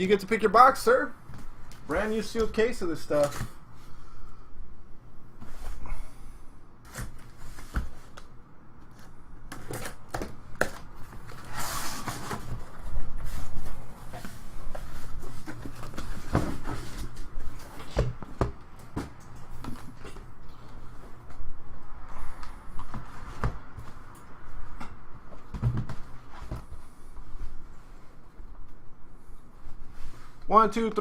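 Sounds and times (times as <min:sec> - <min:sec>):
cardboard rustling scrape: 0:11.0 - 0:17.9.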